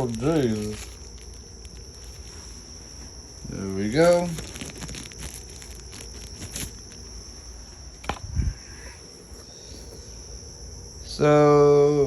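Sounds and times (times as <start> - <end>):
faint ticks of packaging: 0.0 - 8.2
steady high-pitched whine: 0.0 - 12.0.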